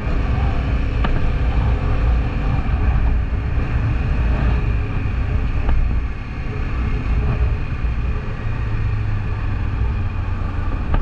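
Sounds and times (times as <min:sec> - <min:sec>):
wind noise on microphone: 0:00.0 - 0:11.0.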